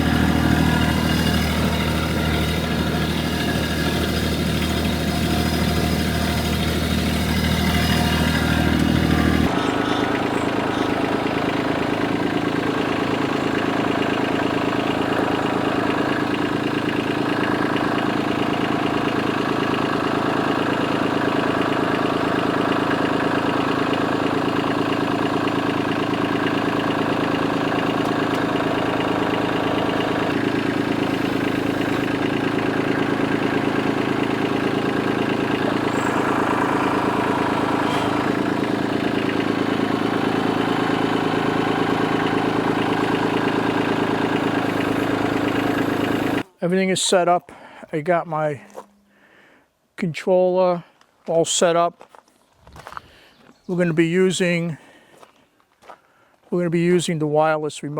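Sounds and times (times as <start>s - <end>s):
engine idling: 0.0s - 46.6s.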